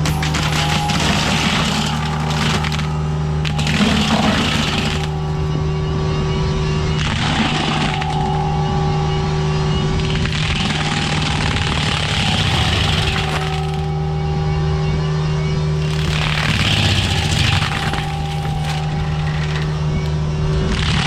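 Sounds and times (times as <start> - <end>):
excavator engine hum: 0.0 - 21.0
mulcher chewing through brush: 10.3 - 13.9, 15.8 - 21.0.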